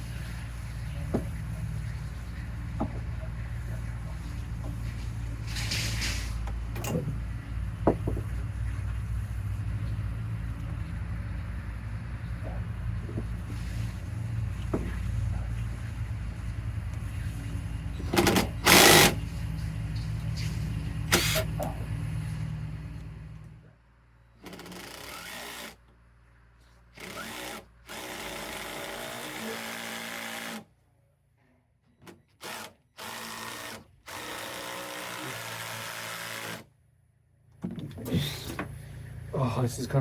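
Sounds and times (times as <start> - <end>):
loud knocks: 7.8 - 8.4
cordless drill driving fasteners: 18.1 - 19.2, 21.1 - 21.5, 24.4 - 25.8, 27.0 - 30.6, 32.3 - 36.7.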